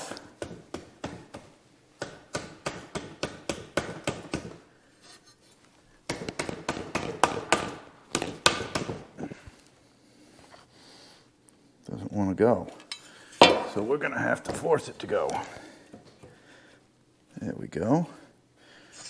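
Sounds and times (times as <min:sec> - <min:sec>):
hammer tapping on wood: 0:00.4 - 0:04.6, 0:06.1 - 0:09.1.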